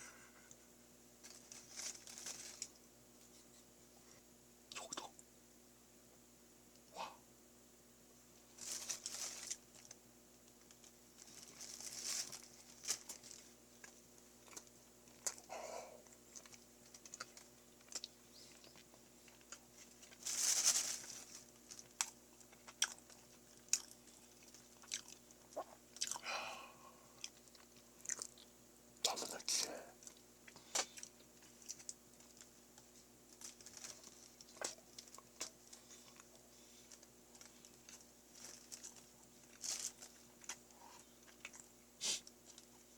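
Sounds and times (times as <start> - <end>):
close-miked chewing: 13.8 - 20.2, 21.8 - 26.3, 27.1 - 28.5, 40.3 - 42.8.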